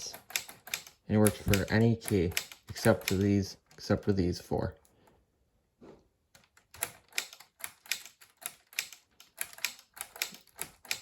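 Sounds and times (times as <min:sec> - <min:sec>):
plastic typewriter keys clacking: 0:00.0 - 0:03.4, 0:06.4 - 0:11.0.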